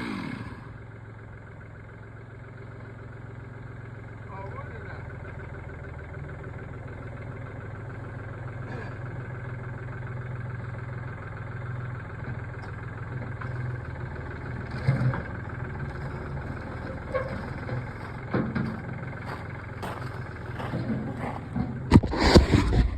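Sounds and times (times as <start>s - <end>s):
engine idling: 0.0s - 22.9s
knocks and clunks: 16.6s - 22.9s.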